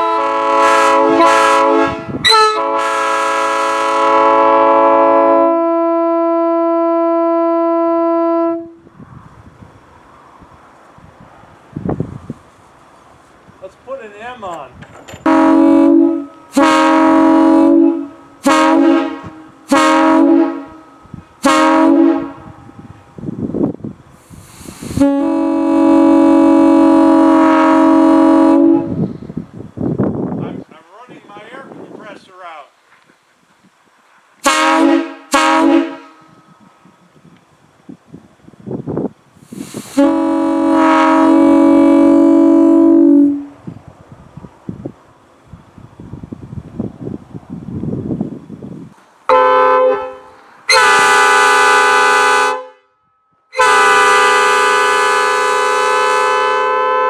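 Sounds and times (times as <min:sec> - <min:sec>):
locomotive air horn blasts: 0:00.0 - 0:08.9, 0:15.2 - 0:23.0, 0:24.2 - 0:29.2, 0:34.4 - 0:36.6, 0:39.4 - 0:43.6, 0:49.3 - 0:57.0
rush of air: 0:08.8 - 0:13.7, 0:22.2 - 0:25.2, 0:28.8 - 0:30.5, 0:36.0 - 0:40.2.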